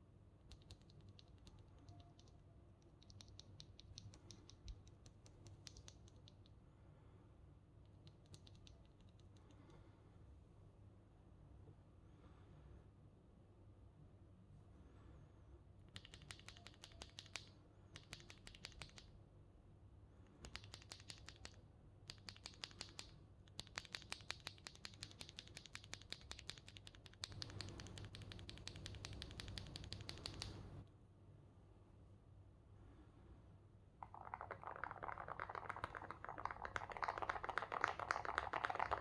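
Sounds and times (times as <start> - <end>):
typing on mechanical keyboard: 8.2 - 9.2, 15.9 - 19.1, 20.4 - 30.6, 34.0 - 39.0.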